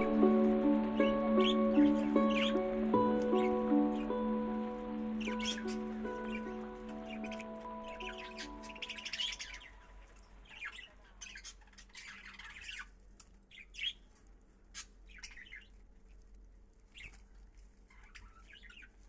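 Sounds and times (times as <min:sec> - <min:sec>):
parrots chirping and squawking: 0:00.0 - 0:15.8, 0:16.8 - 0:19.0.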